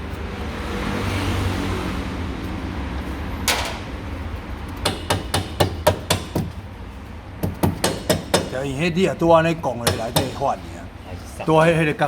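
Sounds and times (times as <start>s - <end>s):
sharp metallic clack: 3.4s - 3.9s.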